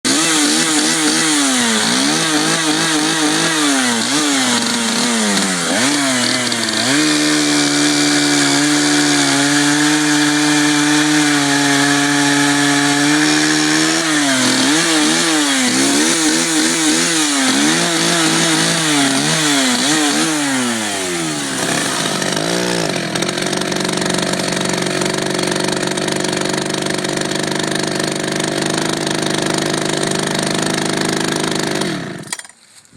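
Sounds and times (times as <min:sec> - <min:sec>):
chainsaw engine revving: 0:00.0 - 0:32.5.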